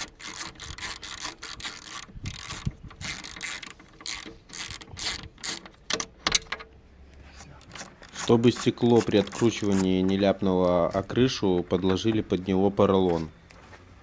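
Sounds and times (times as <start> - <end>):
ratchet wrench clicking: 0.0 - 6.6, 7.6 - 10.0.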